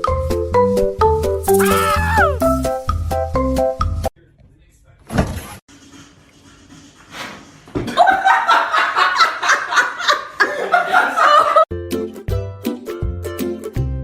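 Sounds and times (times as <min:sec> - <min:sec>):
people laughing hard: 0:07.9 - 0:11.7.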